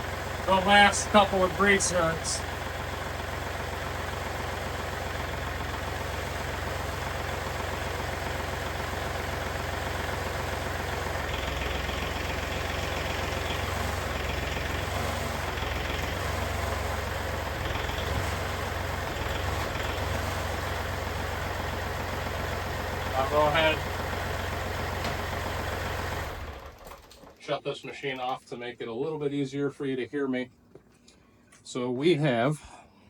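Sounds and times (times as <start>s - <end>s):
stump grinder engine running: 0.0s - 27.4s.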